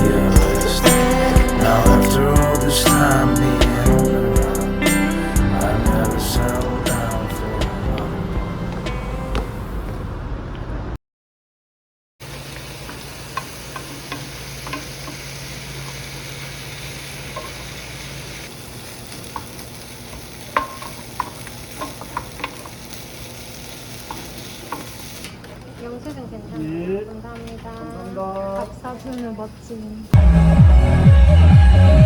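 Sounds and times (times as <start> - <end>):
steady hiss: 0.0 - 7.6, 12.2 - 25.4
low hum: 0.0 - 11.0.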